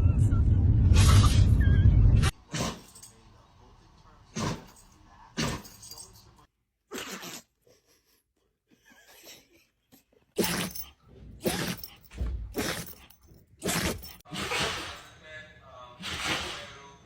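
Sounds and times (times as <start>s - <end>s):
dog sneezing: 2.4s - 3.0s, 4.3s - 4.8s, 5.4s - 5.9s, 10.4s - 12.0s, 12.6s - 15.1s, 16.0s - 16.7s.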